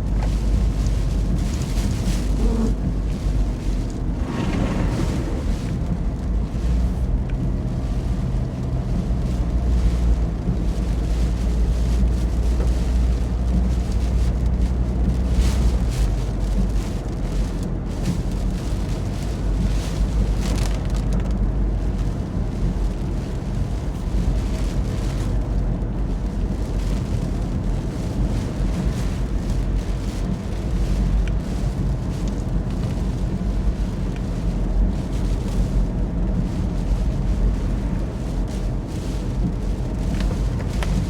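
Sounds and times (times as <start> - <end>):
storm wind buffeting microphone: 0.0 - 12.2, 21.6 - 41.0.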